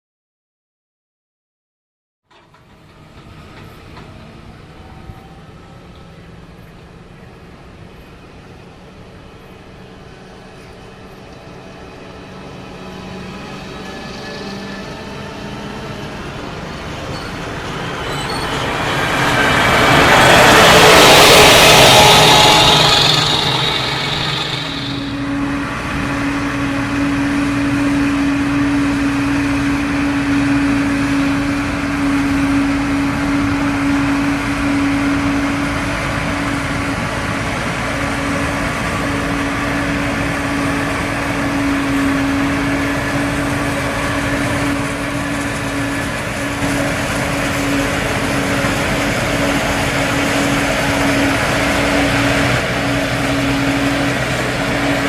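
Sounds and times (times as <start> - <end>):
heavy farm machinery running: 2.3 - 55.0.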